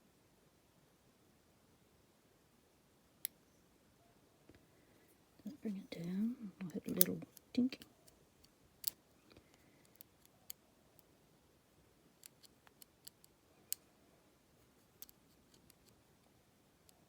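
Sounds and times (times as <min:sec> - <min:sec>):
lock pick metallic clicks: 0:06.7 - 0:10.6, 0:12.2 - 0:13.8.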